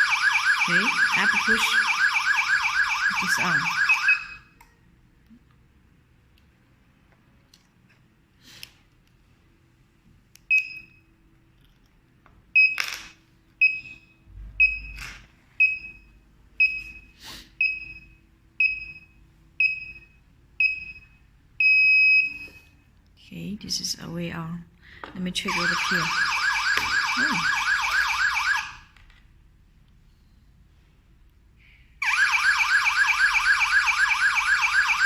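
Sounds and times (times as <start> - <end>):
alarm panel beeping: 0.0 - 4.5, 25.5 - 28.6.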